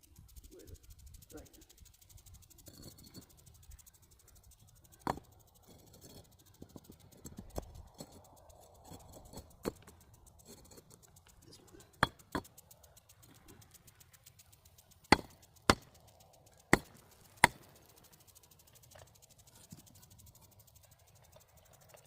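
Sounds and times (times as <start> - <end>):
clicks and knocks on bricks: 2.6 - 3.5, 4.8 - 11.2, 11.9 - 13.5, 15.0 - 17.8
quiet scraping: 2.6 - 3.5, 4.8 - 22.0.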